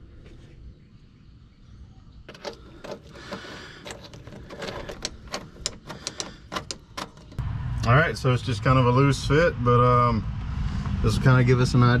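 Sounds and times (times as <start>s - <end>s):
metal hardware clicking and rattling: 2.3s - 7.4s.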